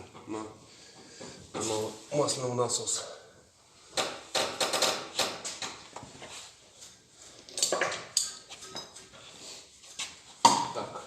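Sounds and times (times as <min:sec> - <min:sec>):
metal tools clinking and knocking: 0:07.4 - 0:09.2.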